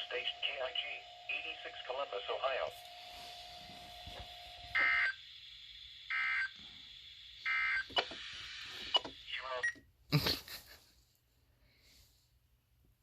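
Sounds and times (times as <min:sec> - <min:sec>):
screechy digital data tones: 0:00.0 - 0:09.8.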